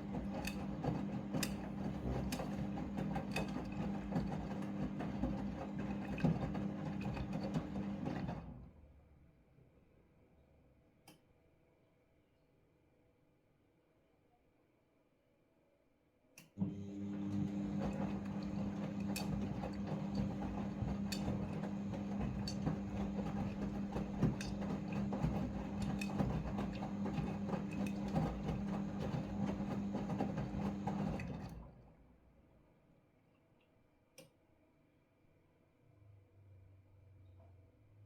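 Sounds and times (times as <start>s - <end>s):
washing machine motor humming: 0.0s - 8.6s, 16.6s - 31.8s.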